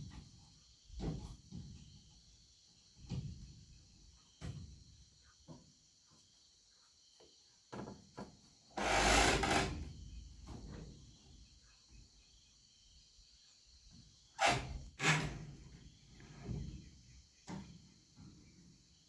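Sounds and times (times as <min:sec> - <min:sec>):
loud rasping scrape: 0:08.8 - 0:09.8, 0:14.4 - 0:15.5.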